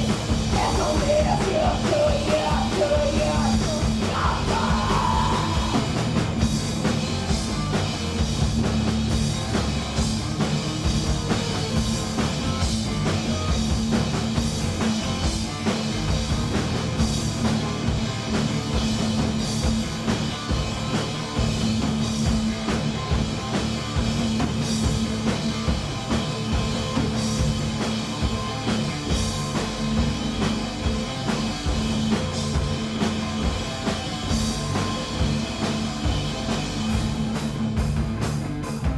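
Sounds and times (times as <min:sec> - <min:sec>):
drum kit beat: 0:00.0 - 0:38.9
electric guitar: 0:00.0 - 0:38.9
live punk rock band: 0:00.0 - 0:38.9.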